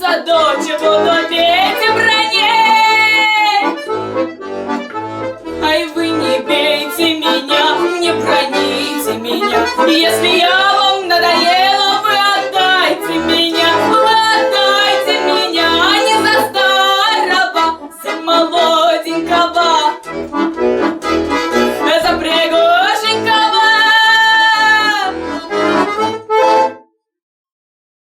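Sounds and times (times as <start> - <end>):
accordion playing folk tune: 0.0 - 27.0.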